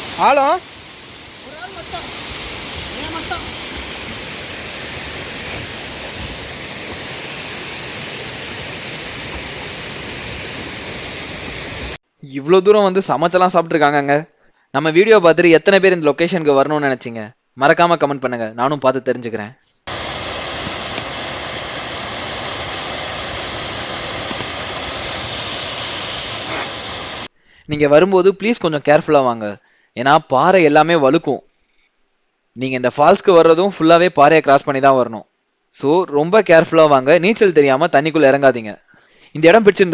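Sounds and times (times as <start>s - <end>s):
waterfall rushing: 0.0s - 12.0s, 19.9s - 27.3s.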